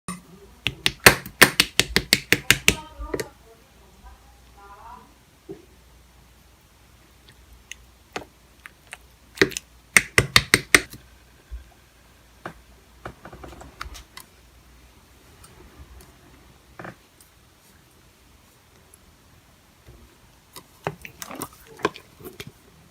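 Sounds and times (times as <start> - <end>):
slime with beads clicking and popping: 0.6 - 3.3, 7.2 - 11.0.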